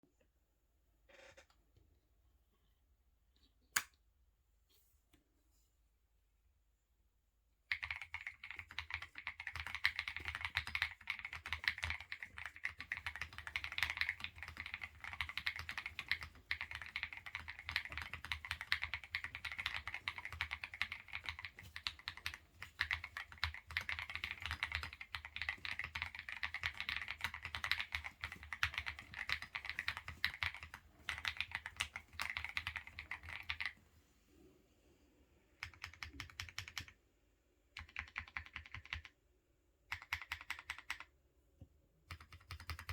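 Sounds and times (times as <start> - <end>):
fast mechanical keyboard typing: 7.7 - 33.8, 35.6 - 37.0, 37.8 - 39.1, 39.9 - 41.0, 42.1 - 42.9.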